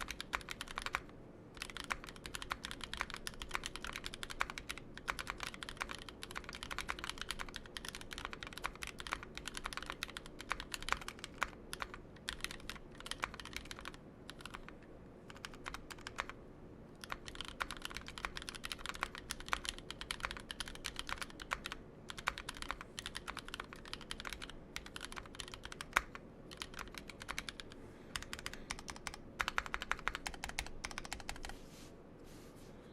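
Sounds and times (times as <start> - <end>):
mechanical keyboard typing: 0.0 - 16.4, 17.0 - 31.5.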